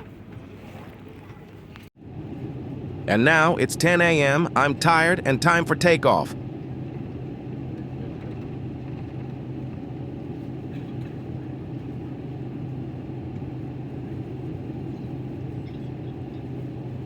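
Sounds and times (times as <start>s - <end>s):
airplane cabin engine roar: 1.3s - 17.0s.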